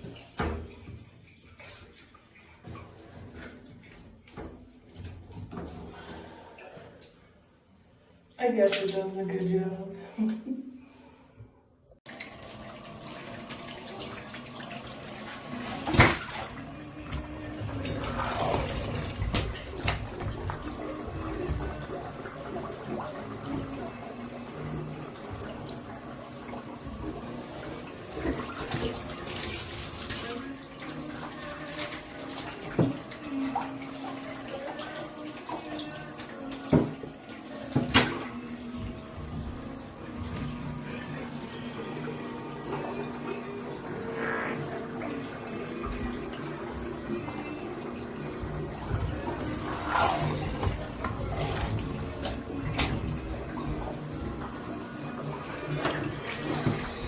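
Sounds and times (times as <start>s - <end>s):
tap water splashing into basin: 12.1s - 39.3s.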